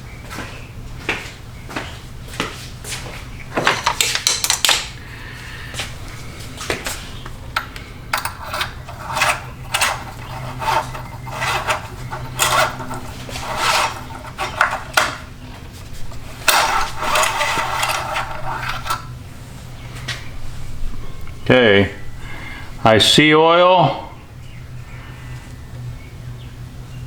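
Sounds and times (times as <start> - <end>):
steady low hum: 4.8 - 27.0
rubbing and scraping handling noises: 5.6 - 21.0.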